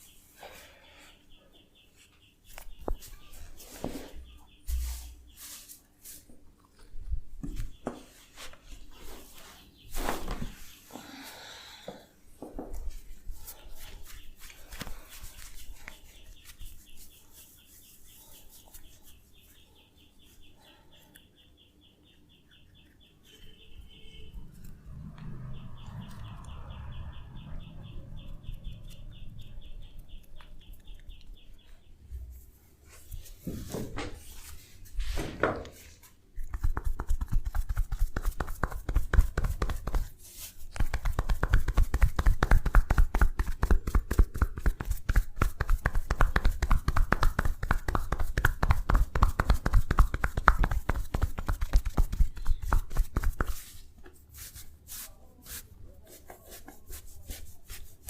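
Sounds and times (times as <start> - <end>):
rapid hand tapping slaps: 36.4 - 53.7
rubbing swishes: 36.5 - 58.0.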